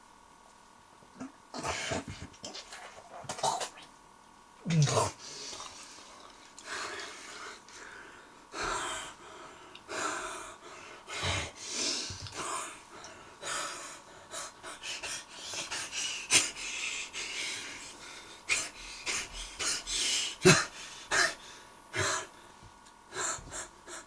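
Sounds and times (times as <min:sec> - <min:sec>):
person breathing heavily: 0:05.2 - 0:24.0.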